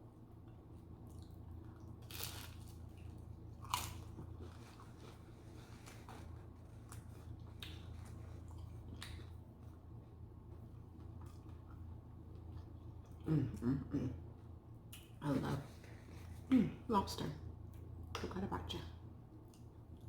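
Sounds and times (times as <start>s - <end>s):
crunchy bread chewing: 0.4s - 13.2s.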